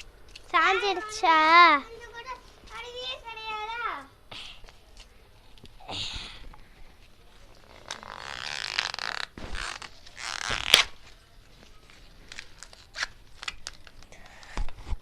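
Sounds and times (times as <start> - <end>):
small clicks and crackles: 7.4 - 15.0
corn stalk cracking: 7.6 - 11.0, 12.3 - 14.1.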